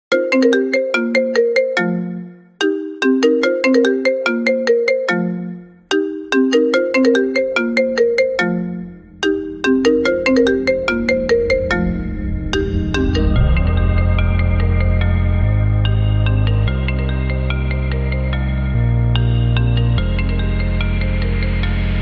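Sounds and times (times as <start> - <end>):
plucked ringtone melody: 0.1 - 22.0
low bass: 8.0 - 22.0.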